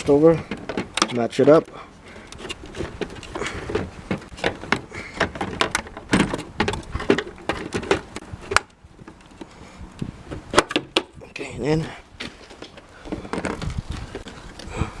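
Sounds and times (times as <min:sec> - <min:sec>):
hard plastic clicks and knocks: 0:02.3 - 0:09.2.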